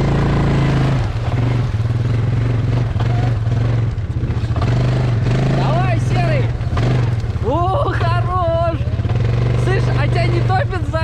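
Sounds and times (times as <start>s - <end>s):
quad bike engine running: 0.0s - 11.0s.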